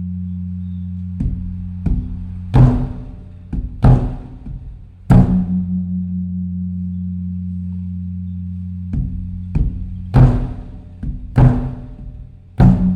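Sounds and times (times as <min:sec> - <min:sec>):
large drum struck with a beater: 0:01.2 - 0:05.8, 0:09.0 - 0:12.9.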